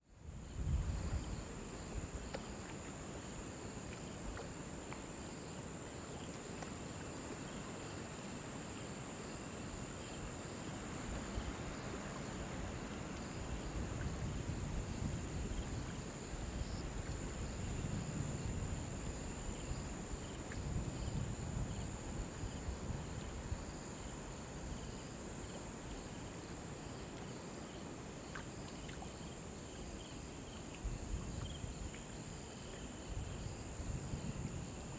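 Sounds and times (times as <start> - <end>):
crickets chirping: 0.0 - 34.9.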